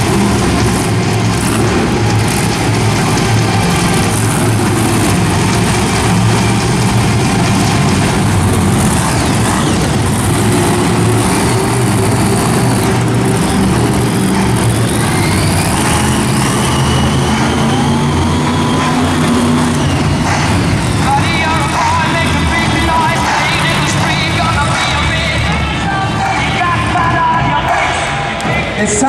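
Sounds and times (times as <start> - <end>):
monster truck engines: 0.0 - 29.0
faint rising whistling tones: 14.1 - 22.0.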